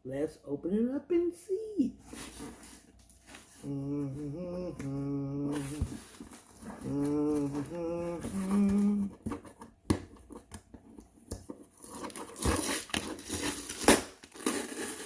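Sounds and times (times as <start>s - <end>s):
man humming: 3.6s - 9.4s
packaging crinkling and tearing: 11.6s - 15.0s.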